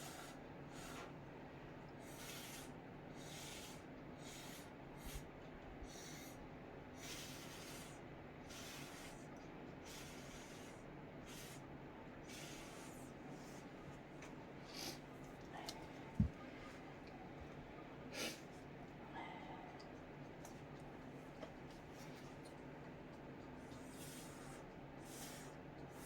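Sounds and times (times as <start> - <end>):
air-conditioner hum: 0.0 - 26.0
breath puffs through a straw: 7.0 - 9.2.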